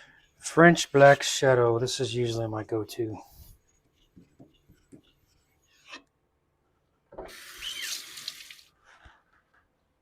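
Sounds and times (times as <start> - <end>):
water running from tap: 7.3 - 8.7.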